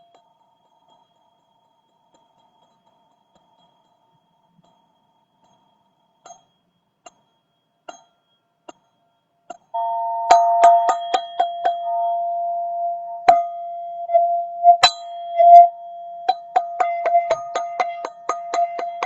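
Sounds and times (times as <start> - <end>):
chime strikes: 9.8 - 14.1
steady ringing tone: 9.8 - 19.0.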